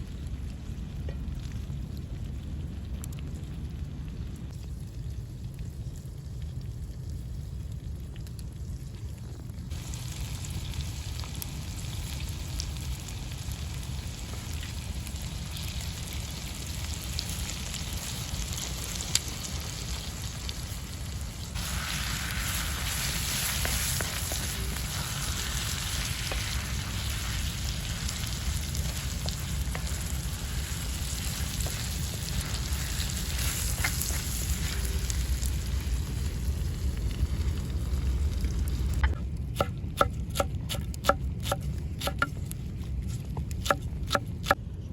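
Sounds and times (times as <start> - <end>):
low rumble: 0.0 - 44.9
food sizzling in pan: 9.7 - 36.2.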